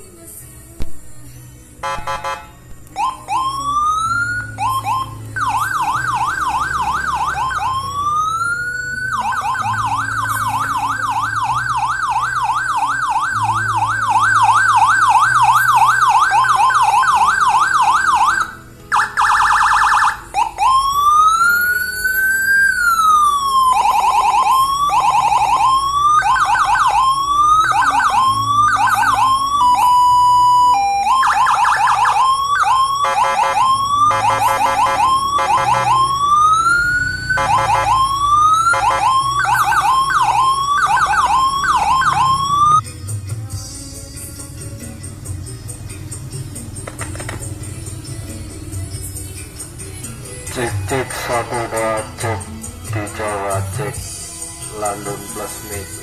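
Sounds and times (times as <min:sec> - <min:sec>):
blaring horn buzz: 0:01.8 - 0:02.7, 0:32.6 - 0:40.0
electronic police siren: 0:03.0 - 0:42.8.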